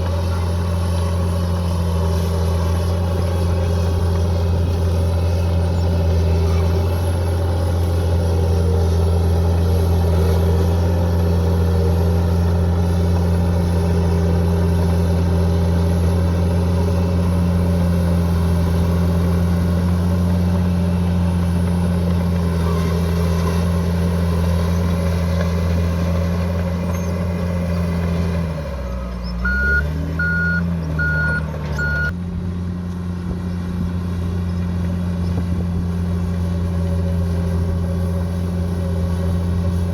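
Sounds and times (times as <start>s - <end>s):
bulldozer diesel engine running: 0.0s - 39.9s
reversing alarm beeping: 29.4s - 32.2s.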